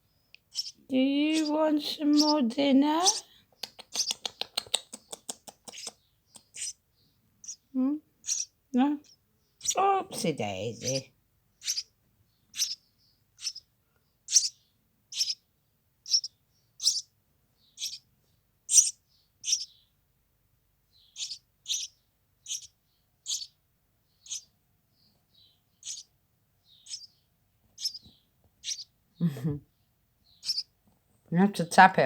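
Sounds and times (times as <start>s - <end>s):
nestling bird cheeping: 0.5s - 6.8s, 7.4s - 11.9s, 12.5s - 12.8s, 13.4s - 13.7s, 14.3s - 15.4s, 16.0s - 18.0s, 18.7s - 19.8s, 21.0s - 23.6s, 24.2s - 24.5s, 25.4s - 27.2s, 27.8s - 29.4s, 30.3s - 30.7s.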